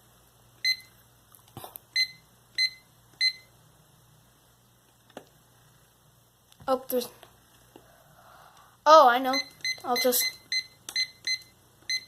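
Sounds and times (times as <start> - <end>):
alarm clock high beeps: 0.6 - 0.9, 2.0 - 3.5, 9.3 - 12.0.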